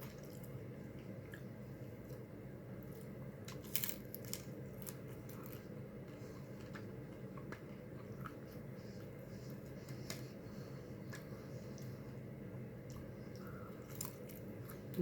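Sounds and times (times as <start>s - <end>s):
crisp crunches of eating: 0.0s - 8.6s, 12.8s - 15.0s
low background hum: 0.0s - 15.0s.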